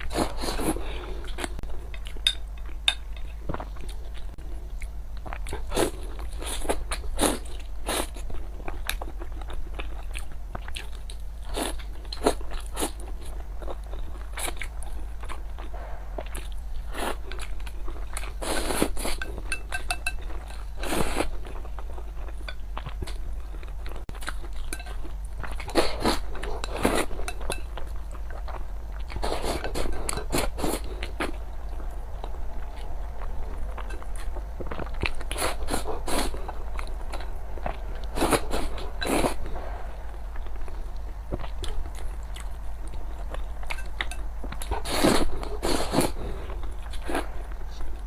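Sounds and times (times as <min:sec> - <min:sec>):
person chewing crunchy food: 0:00.0 - 0:48.0.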